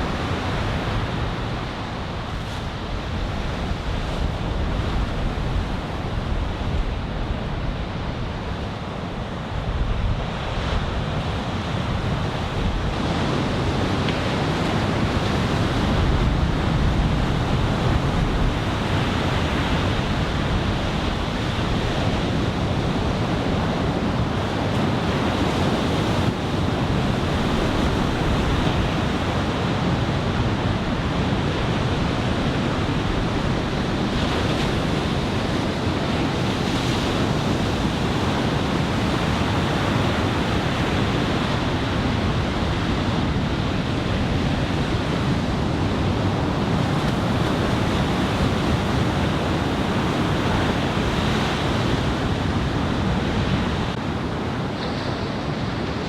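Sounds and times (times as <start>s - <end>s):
ocean waves breaking: 0.0s - 56.0s
wind rumbling on microphone: 0.0s - 56.0s.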